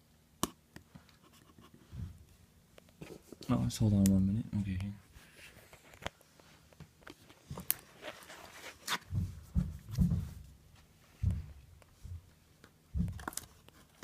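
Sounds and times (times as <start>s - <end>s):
soft handling thumps: 9.0s - 12.3s.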